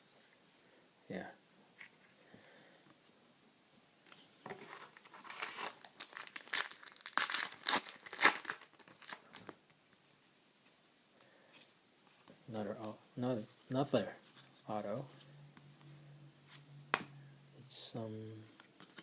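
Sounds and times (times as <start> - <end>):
wrapper crinkling: 4.6 - 9.5.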